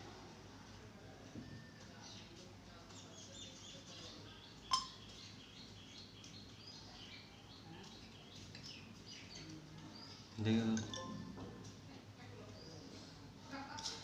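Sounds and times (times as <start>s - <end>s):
faint high bird chirps: 2.9s - 11.4s.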